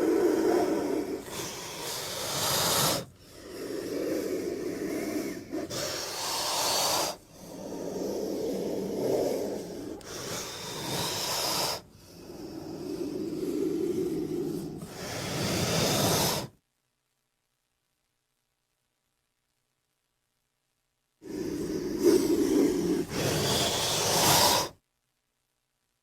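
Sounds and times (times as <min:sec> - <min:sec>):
creature raspy hissing breaths: 0:00.0 - 0:16.6, 0:21.2 - 0:24.8.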